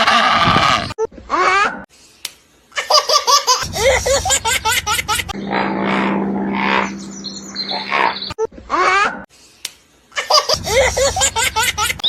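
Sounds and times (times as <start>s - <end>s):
baby laughing: 2.8s - 6.8s, 10.1s - 12.0s
steady low hum: 3.6s - 8.4s.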